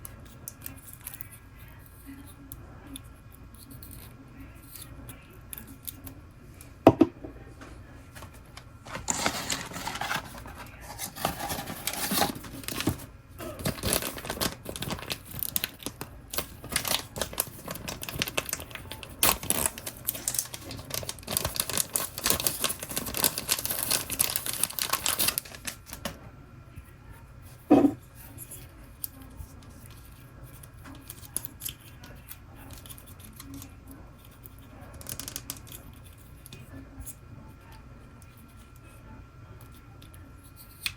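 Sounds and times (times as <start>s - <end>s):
packaging rustling and tearing: 8.2s - 26.2s.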